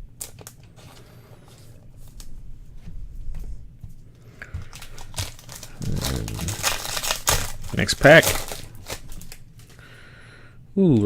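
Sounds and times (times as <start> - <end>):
low steady hum: 0.0 - 11.0
cards and plastic holders handled: 4.5 - 9.8.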